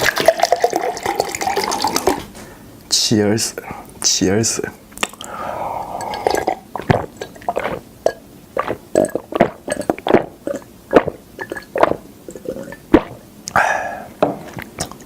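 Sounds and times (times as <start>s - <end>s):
person swallowing gulps: 5.0s - 15.0s.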